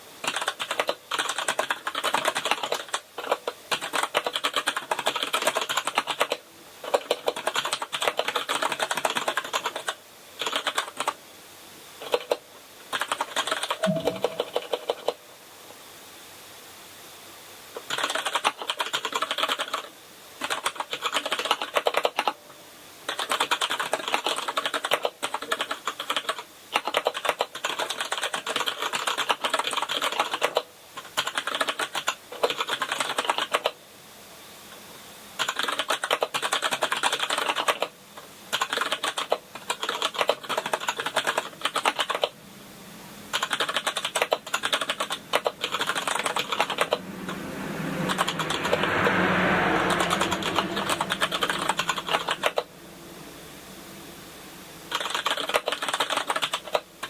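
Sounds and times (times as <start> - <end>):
fast typing on mechanical keyboard: 0.2 - 11.2, 12.0 - 13.8, 17.8 - 22.4, 23.1 - 33.8, 35.4 - 37.9, 38.5 - 42.4, 43.3 - 47.0, 51.4 - 52.7, 54.9 - 57.0.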